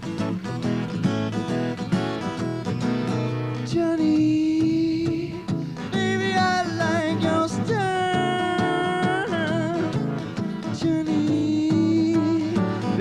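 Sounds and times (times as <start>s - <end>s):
fingerpicked acoustic guitar: 0.0s - 13.0s.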